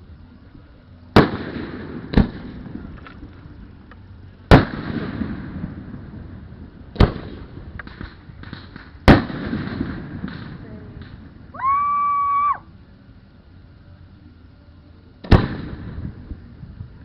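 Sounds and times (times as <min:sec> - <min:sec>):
fireworks bursting with bangs: 0:01.1 - 0:03.3, 0:04.4 - 0:11.5, 0:15.2 - 0:17.0
small crackles: 0:07.8 - 0:09.0.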